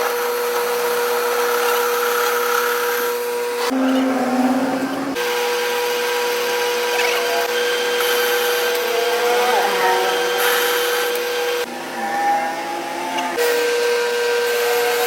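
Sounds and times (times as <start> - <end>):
power tool motor whining: 1.2 - 5.5.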